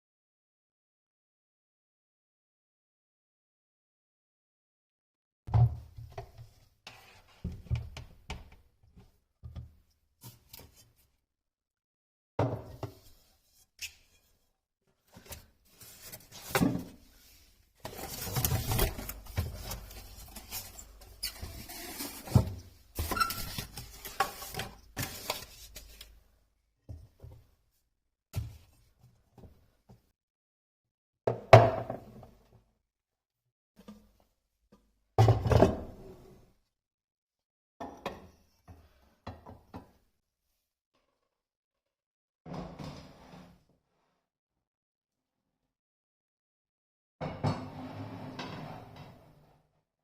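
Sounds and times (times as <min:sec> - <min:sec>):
objects knocking and thudding: 0:12.4 - 0:13.1, 0:16.2 - 0:17.0, 0:17.8 - 0:26.0, 0:35.2 - 0:36.1.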